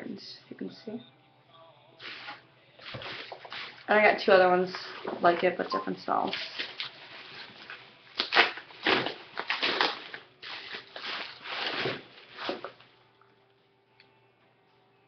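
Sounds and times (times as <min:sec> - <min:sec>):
plastic bottles rustling: 0:02.0 - 0:12.9.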